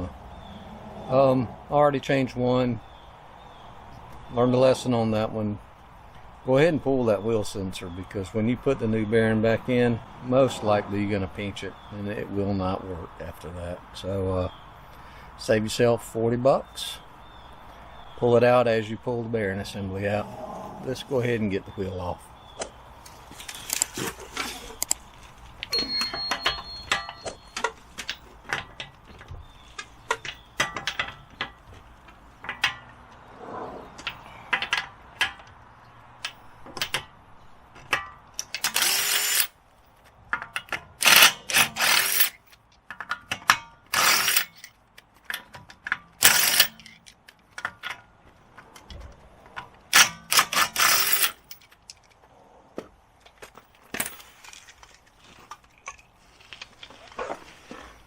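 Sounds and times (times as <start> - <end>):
hand tools ratcheting and clanking: 25.6 - 33.0, 34.0 - 35.6, 36.2 - 37.2, 37.8 - 39.6, 40.3 - 48.8, 49.5 - 52.2
sharp metal clicks: 37.8 - 39.6, 49.5 - 52.2.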